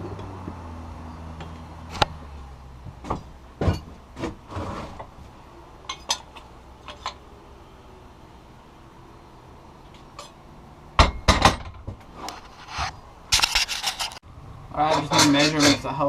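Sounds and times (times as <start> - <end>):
metal tools clinking: 5.8 - 7.3, 14.8 - 16.0.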